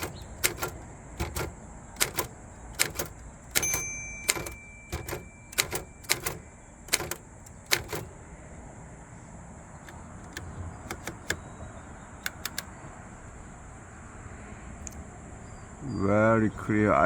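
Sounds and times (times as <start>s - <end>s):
typewriter bell ringing: 0.0s - 8.1s, 10.3s - 11.4s, 12.2s - 12.6s
typewriter key strikes: 0.0s - 8.1s, 9.8s - 11.5s, 12.2s - 12.7s.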